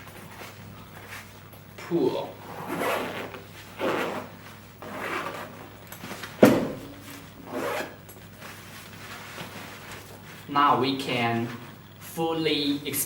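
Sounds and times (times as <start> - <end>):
zipper rasping open: 2.4 - 5.8, 7.4 - 8.0.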